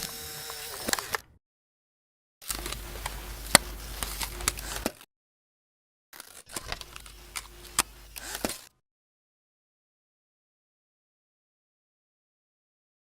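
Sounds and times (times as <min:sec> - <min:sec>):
hiss and low hum: 0:02.6 - 0:04.8.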